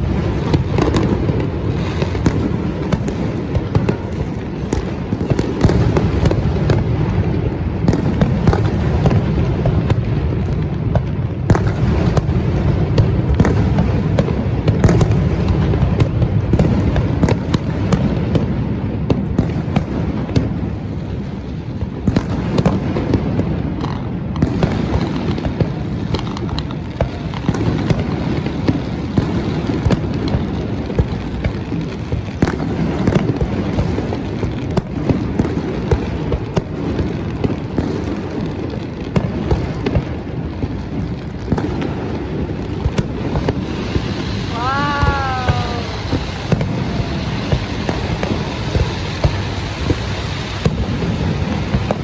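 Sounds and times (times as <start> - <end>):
fireworks cracks and pops: 0.0 - 52.0
deep rumble of booms: 29.0 - 36.7, 42.6 - 52.0.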